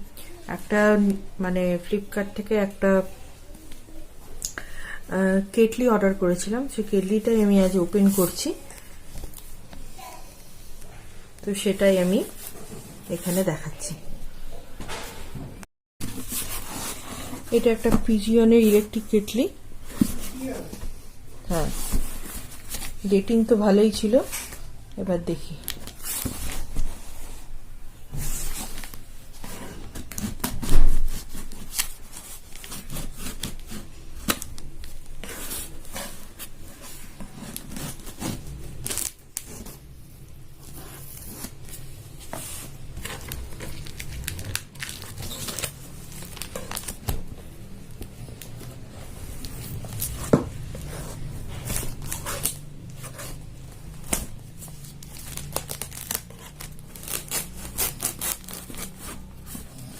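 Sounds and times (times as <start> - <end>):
plastic crinkling: 41.0 - 59.9
tape and paper tearing: 54.8 - 59.7.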